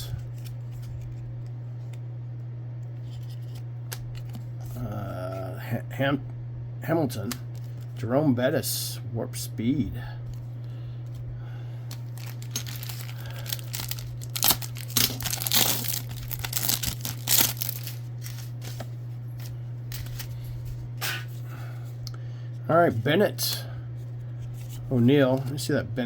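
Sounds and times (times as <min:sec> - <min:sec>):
steady low hum: 0:00.0 - 0:26.0
wrapper tearing and crinkling: 0:11.9 - 0:18.8.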